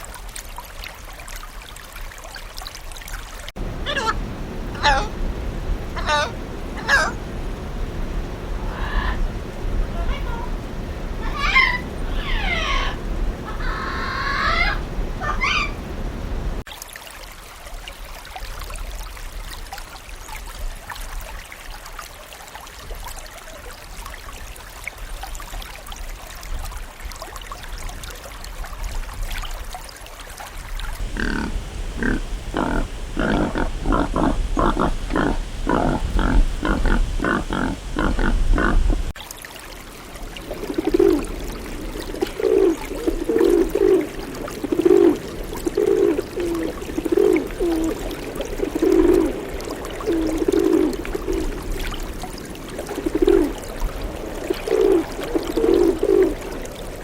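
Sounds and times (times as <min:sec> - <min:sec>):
gliding animal calls: 0:03.6 - 0:07.3, 0:08.6 - 0:16.6, 0:31.0 - 0:39.1, 0:40.4 - 0:52.2, 0:52.8 - 0:53.7
low rumbling: 0:03.6 - 0:16.6, 0:31.0 - 0:39.2
animal rhythmic grunting calls: 0:31.0 - 0:39.1.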